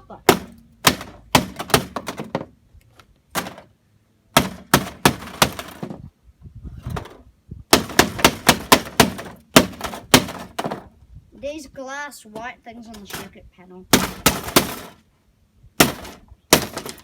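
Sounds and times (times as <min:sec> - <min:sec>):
blows smashing circuit boards: 0:00.2 - 0:02.4, 0:03.3 - 0:03.7, 0:04.4 - 0:06.0, 0:06.9 - 0:10.9, 0:13.9 - 0:15.0, 0:15.8 - 0:17.0.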